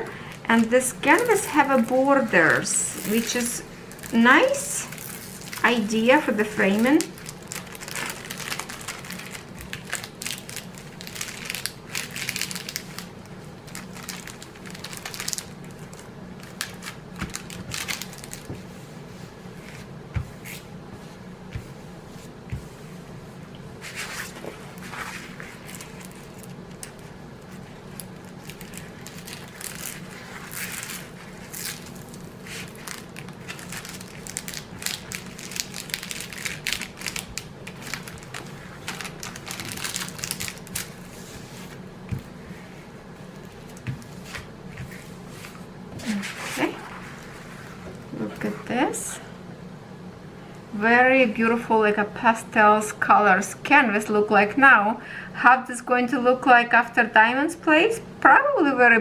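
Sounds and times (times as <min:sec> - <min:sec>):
plastic packaging crinkling: 0:00.2 - 0:20.6, 0:23.8 - 0:42.4.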